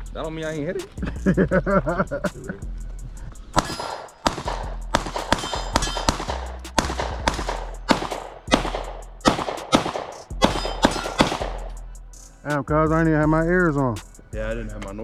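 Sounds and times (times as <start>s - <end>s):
pistol shots echoing: 3.6s - 11.7s.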